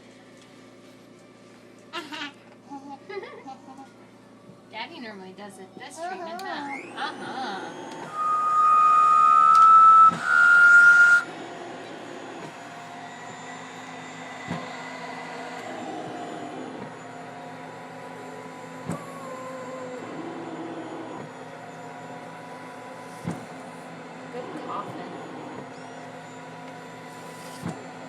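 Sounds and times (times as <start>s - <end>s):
machine whine with rushing air: 6.8s - 28.0s.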